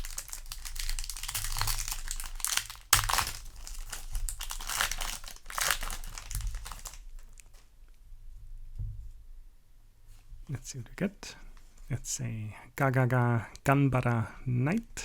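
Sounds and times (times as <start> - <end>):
foil wrapper crinkling: 0.0 - 7.6.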